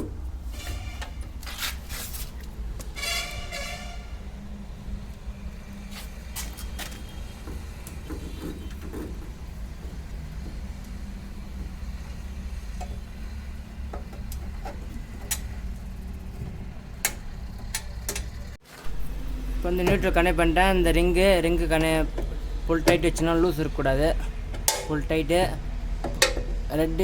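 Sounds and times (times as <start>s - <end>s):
low background rumble: 9.2s - 27.0s.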